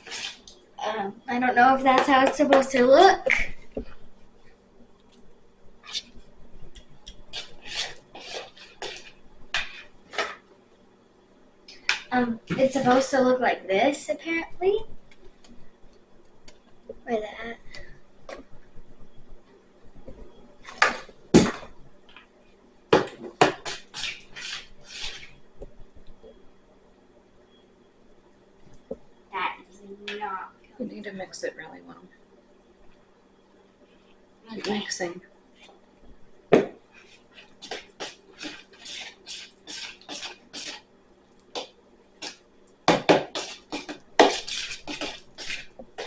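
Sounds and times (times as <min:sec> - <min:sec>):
slime being stirred: 0:00.0 - 0:00.6, 0:05.8 - 0:10.4, 0:23.4 - 0:25.4, 0:36.8 - 0:46.0
utensil knocking and scraping bowl: 0:07.3 - 0:10.4, 0:23.0 - 0:25.3, 0:36.6 - 0:40.8, 0:41.5 - 0:46.0.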